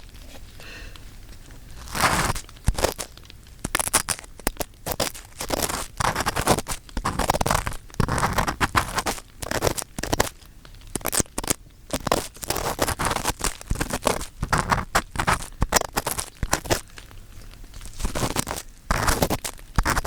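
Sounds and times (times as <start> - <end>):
ear pick scraping in ear: 1.8 - 3.1, 3.8 - 10.3, 11.0 - 16.8, 17.9 - 20.0.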